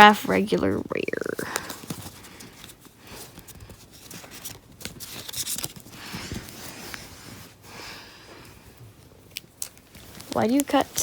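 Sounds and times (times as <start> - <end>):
foil wrapper rustling: 1.5 - 7.1, 9.2 - 11.0
cards tapping and shuffling: 9.3 - 11.0.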